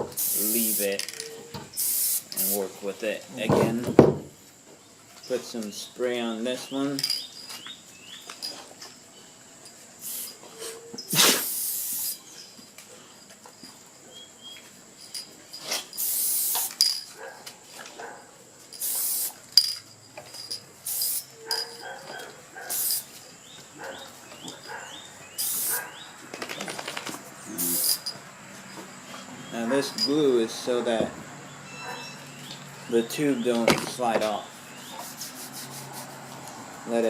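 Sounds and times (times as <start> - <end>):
aerosol can hissing: 0.1 - 1.2, 1.8 - 2.7, 10.0 - 10.4, 11.1 - 12.2, 15.9 - 16.9, 18.8 - 19.4, 20.8 - 21.3, 22.7 - 23.1, 25.4 - 25.8, 27.6 - 28.0.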